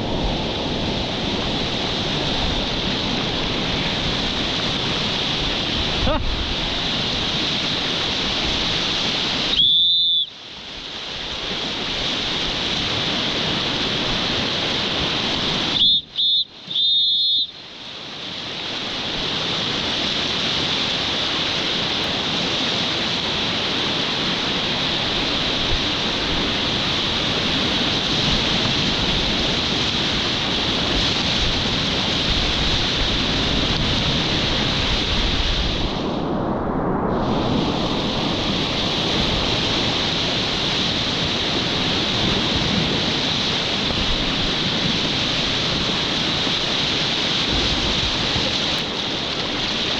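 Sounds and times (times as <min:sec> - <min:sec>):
whitewater rapids rushing: 0:00.0 - 0:36.0, 0:37.4 - 0:49.9
short high whistle: 0:09.5 - 0:10.4, 0:15.7 - 0:17.6.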